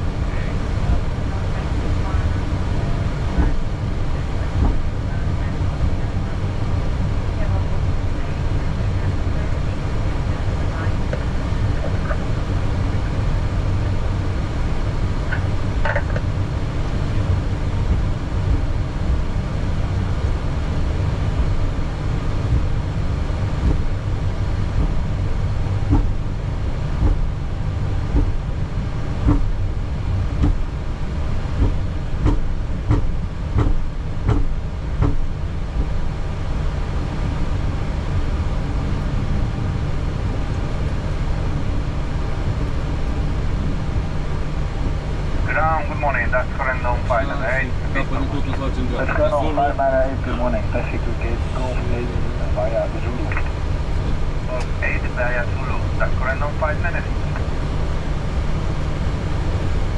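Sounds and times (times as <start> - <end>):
airplane taxiing rumble: 0.0 - 59.9.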